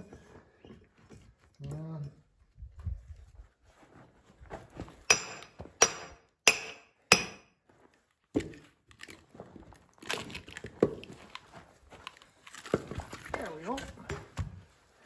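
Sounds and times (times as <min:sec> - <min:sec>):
sledgehammer striking steel wedge: 0:05.1 - 0:07.5.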